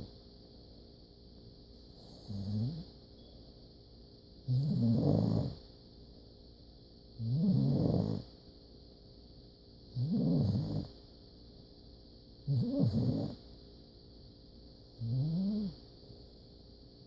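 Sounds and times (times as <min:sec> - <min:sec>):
puppy snoring: 0:02.0 - 0:02.9, 0:04.4 - 0:05.7, 0:07.2 - 0:08.3, 0:09.9 - 0:11.0, 0:12.4 - 0:13.4, 0:15.0 - 0:15.8.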